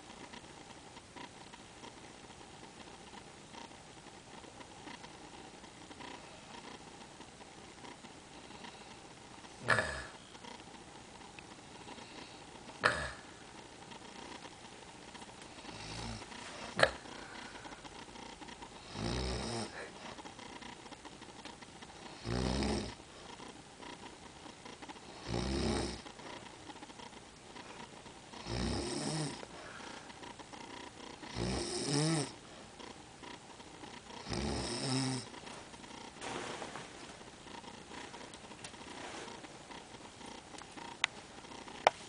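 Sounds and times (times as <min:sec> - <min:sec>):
quiet breathing: 0:08.2 - 0:09.2, 0:11.7 - 0:12.6, 0:15.4 - 0:20.8, 0:21.9 - 0:25.3, 0:25.9 - 0:31.4
woman snoring: 0:09.6 - 0:10.2, 0:11.9 - 0:13.3, 0:15.6 - 0:17.8, 0:18.8 - 0:20.2, 0:22.1 - 0:23.5, 0:25.1 - 0:26.1, 0:28.4 - 0:32.4, 0:34.2 - 0:35.3.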